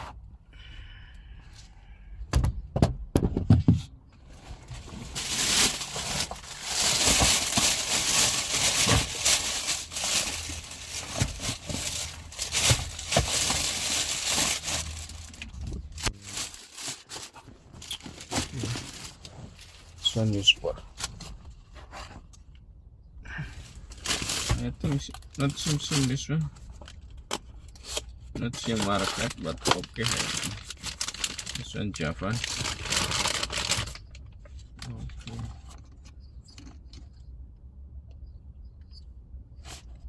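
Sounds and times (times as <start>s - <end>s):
plastic packaging crinkling and tearing: 4.6s - 20.0s, 23.9s - 26.2s, 27.7s - 34.8s.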